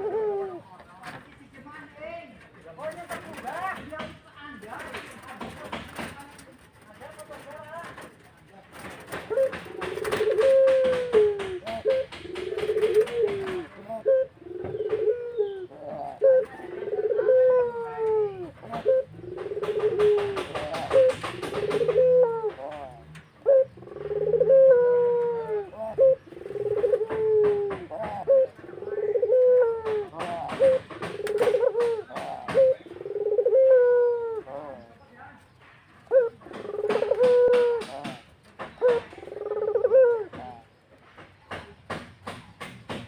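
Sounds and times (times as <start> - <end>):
dove cooing: 0.0 - 1.2, 7.9 - 35.1, 36.0 - 40.7.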